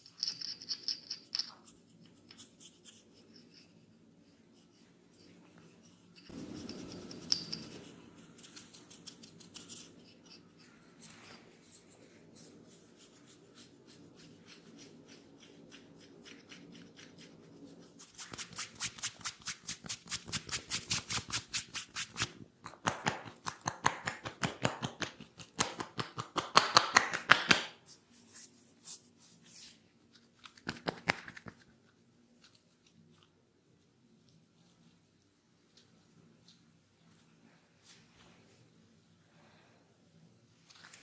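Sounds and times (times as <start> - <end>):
hands slapping and tapping: 20.4 - 27.8, 30.4 - 31.7
hands clicking: 22.6 - 27.7.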